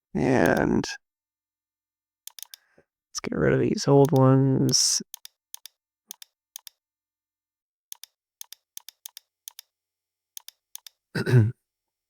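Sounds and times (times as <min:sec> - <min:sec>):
keyboard clicks: 0:02.3 - 0:02.6, 0:04.0 - 0:06.8, 0:07.9 - 0:09.7, 0:10.4 - 0:11.0
computer mouse clicks: 0:02.3 - 0:02.7, 0:04.0 - 0:06.8, 0:07.9 - 0:09.7, 0:10.4 - 0:11.0.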